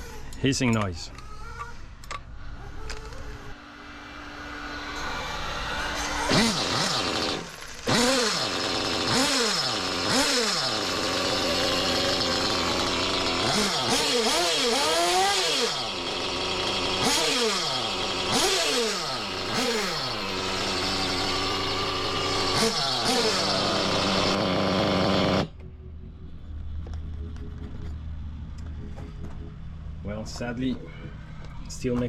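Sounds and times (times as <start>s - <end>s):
nitro engine revving: 3.8s - 25.6s.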